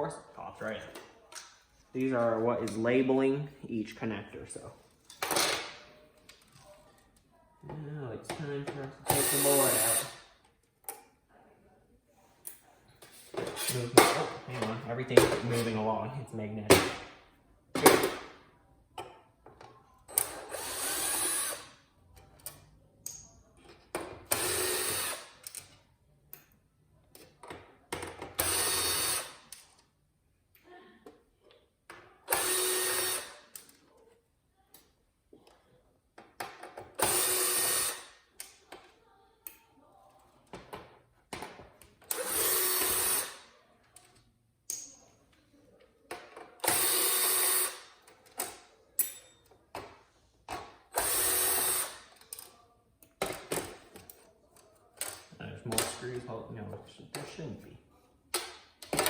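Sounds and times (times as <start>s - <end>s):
cordless drill motor: 9.1s - 10.2s, 20.2s - 21.7s, 24.3s - 25.3s, 28.4s - 29.4s, 32.3s - 33.4s, 37.0s - 38.1s, 42.1s - 43.4s, 51.0s - 52.0s.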